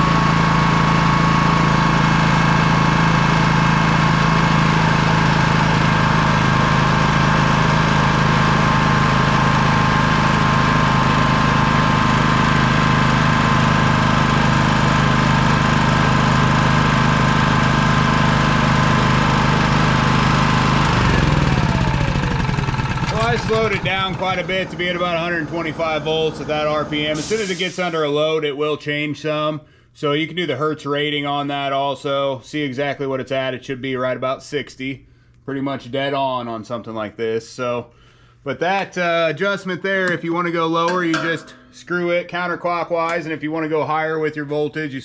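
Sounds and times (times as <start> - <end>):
generator engine running: 0.0 - 27.8.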